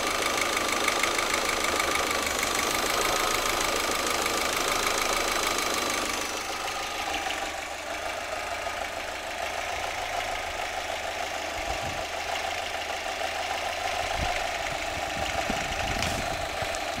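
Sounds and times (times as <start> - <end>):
car engine idling: 0.0 - 17.0
faint engine knock: 13.8 - 17.0
low thuds: 14.2 - 17.0.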